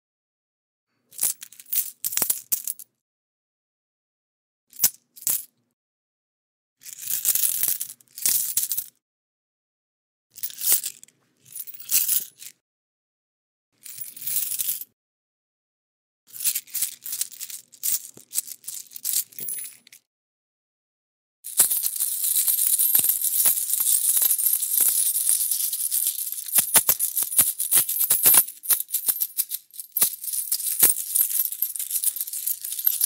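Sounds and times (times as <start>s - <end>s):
metal coins clinking: 21.5s - 33.0s.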